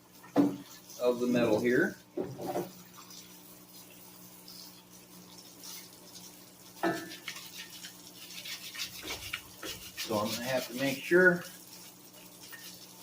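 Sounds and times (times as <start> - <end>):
faint scrubbing of metal part: 6.9 - 11.2.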